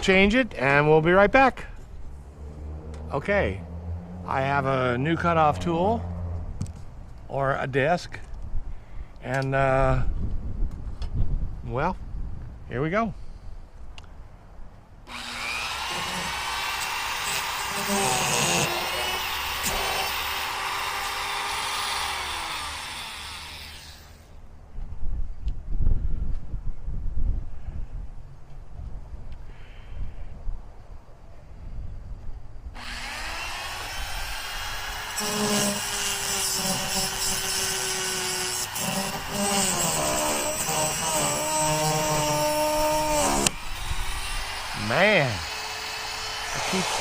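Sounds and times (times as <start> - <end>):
rotary tool cutting steel: 15.1 - 24.2, 32.8 - 47.0.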